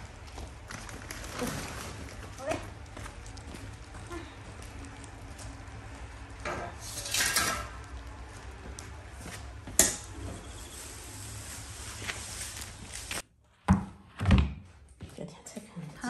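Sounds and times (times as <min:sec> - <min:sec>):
utensils and dishes scraping: 0:06.5 - 0:07.7.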